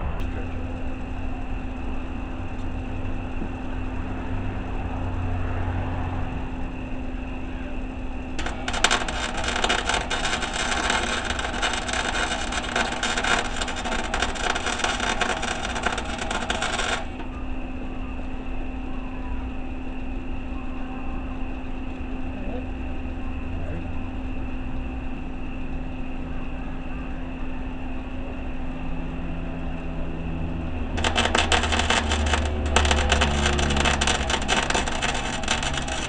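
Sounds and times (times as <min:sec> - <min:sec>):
steady electrical hum: 0:00.0 - 0:18.7, 0:28.6 - 0:36.0
welding arc crackling: 0:08.4 - 0:17.4, 0:31.0 - 0:36.0.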